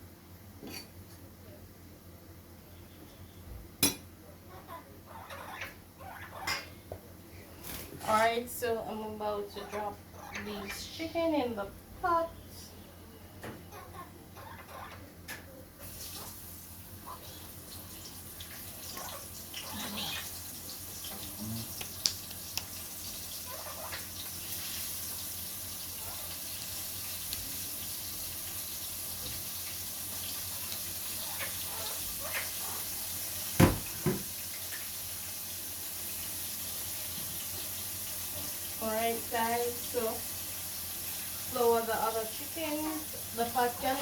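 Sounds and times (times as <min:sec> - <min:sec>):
chicken frying in hot oil: 0:15.8 - 0:44.0.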